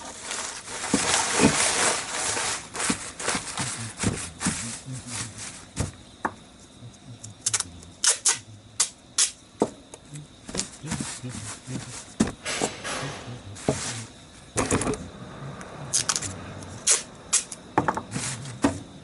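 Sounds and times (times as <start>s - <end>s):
hissy rustle: 0.0s - 6.0s, 10.5s - 18.7s.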